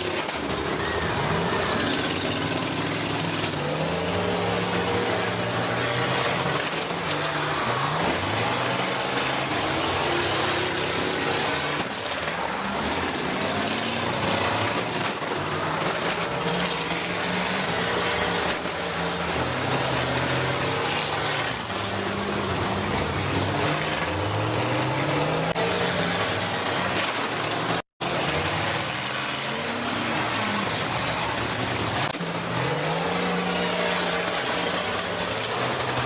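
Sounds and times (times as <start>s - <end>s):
bus engines revving: 0.0s - 36.0s.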